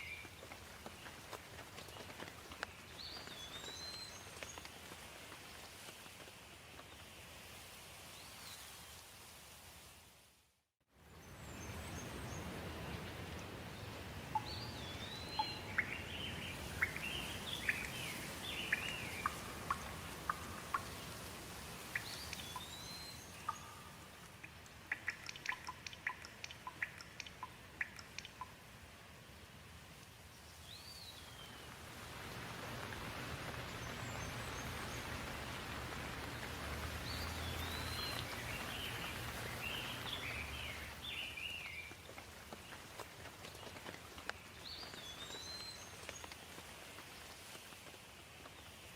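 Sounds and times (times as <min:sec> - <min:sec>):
steady rain hiss: 0:00.0 - 0:48.9
birds singing: 0:13.8 - 0:24.0, 0:33.4 - 0:42.0
dripping water: 0:14.3 - 0:28.7, 0:32.0 - 0:44.3.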